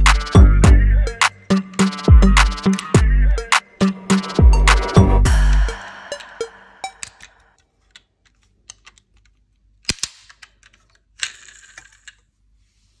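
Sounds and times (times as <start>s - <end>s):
toy cars clicking and knocking: 6.9s - 12.3s.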